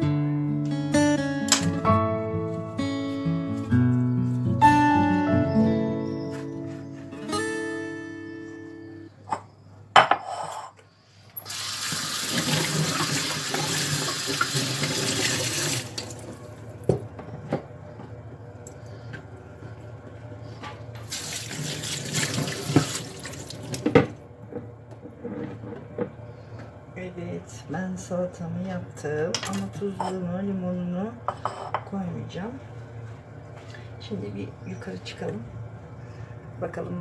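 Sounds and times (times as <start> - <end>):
tap running into sink: 11.5 - 16.3, 21.1 - 24.2.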